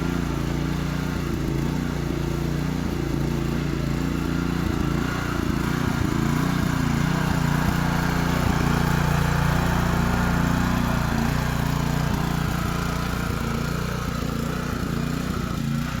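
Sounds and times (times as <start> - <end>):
small engine running: 0.0 - 16.0.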